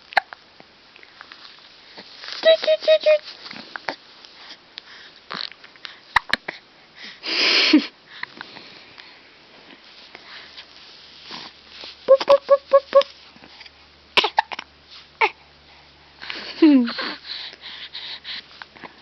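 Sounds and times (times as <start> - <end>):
baby hiccuping: 14.2 - 14.6.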